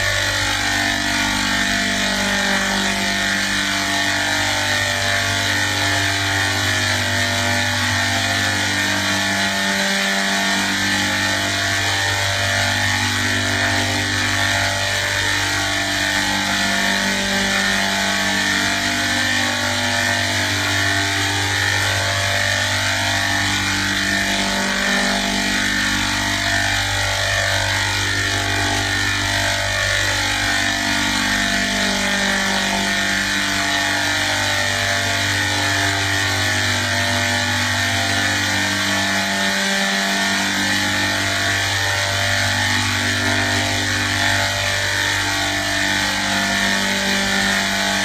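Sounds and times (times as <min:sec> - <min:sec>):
machine-like drone: 0:00.0 - 0:48.0.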